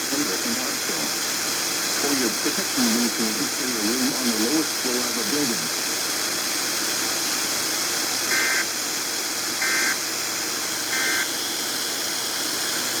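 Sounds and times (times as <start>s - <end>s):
radio static hiss: 0.0s - 5.8s, 8.3s - 8.8s, 9.6s - 10.1s, 10.8s - 11.4s
two-tone data bursts: 8.3s - 8.7s, 9.6s - 10.0s, 10.9s - 11.3s.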